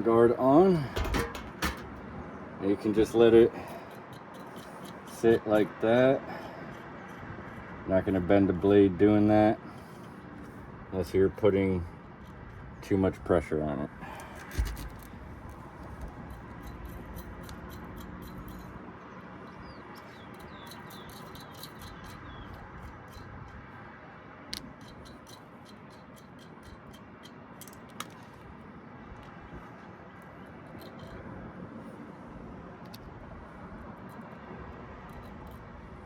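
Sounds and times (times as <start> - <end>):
metal parts clicking and tapping: 0.8 - 2.1, 3.7 - 6.1, 14.4 - 18.8, 19.9 - 23.7, 24.5 - 28.4, 30.4 - 31.2, 33.9 - 35.8.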